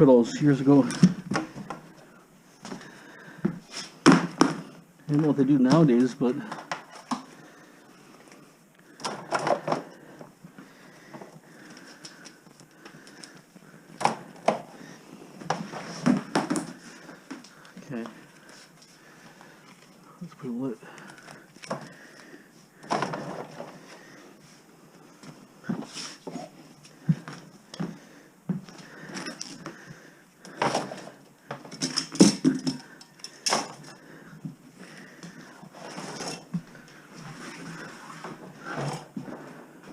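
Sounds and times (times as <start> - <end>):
wire and tools clicking and knocking: 30.4 - 34.0.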